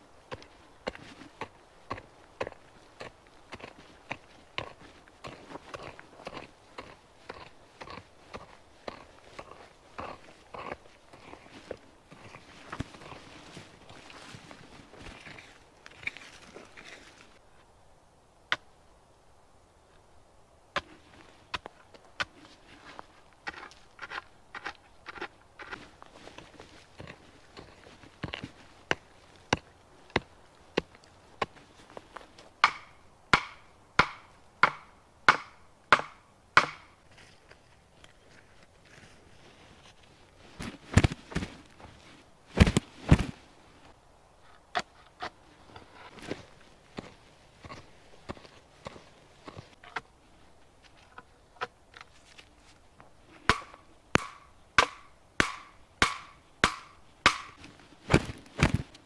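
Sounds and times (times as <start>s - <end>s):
wood being chopped: 32.6s - 37.0s, 53.5s - 59.0s.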